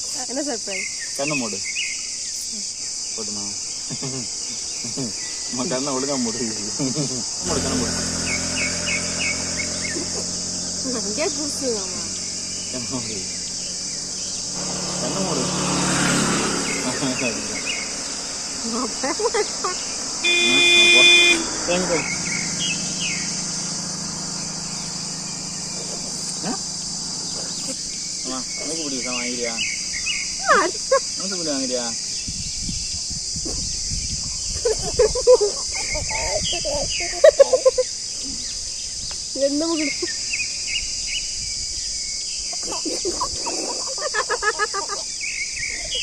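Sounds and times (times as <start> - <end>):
birds chirping: 0.0 - 46.0
crickets trilling: 0.0 - 46.0
short pulses: 7.0 - 30.7.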